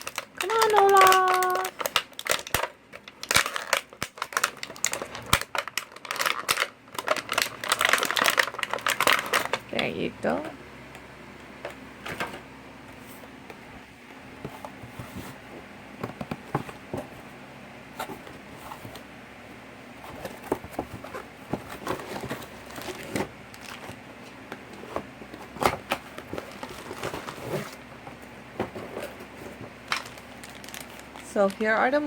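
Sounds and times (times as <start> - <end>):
plastic toy pieces clicking: 0.0 - 2.7
packaging rustling: 0.0 - 9.7, 20.0 - 32.0.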